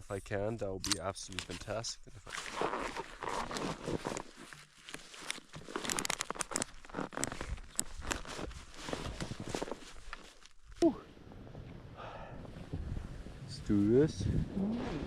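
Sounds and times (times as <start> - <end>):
gear rustling and clicking: 0.8 - 10.8
footsteps crunching in snow: 2.2 - 10.7.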